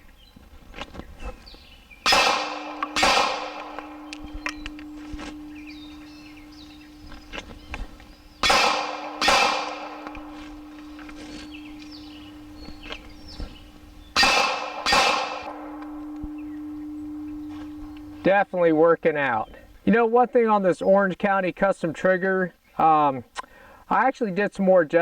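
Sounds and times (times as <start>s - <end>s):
pistol shots: 2.0s - 13.6s, 14.2s - 16.4s
steel target ringing: 2.0s - 18.3s.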